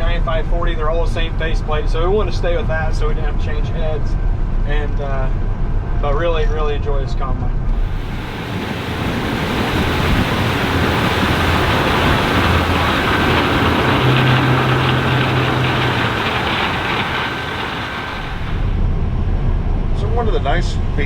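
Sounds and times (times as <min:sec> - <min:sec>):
combine harvester running: 0:07.8 - 0:18.8.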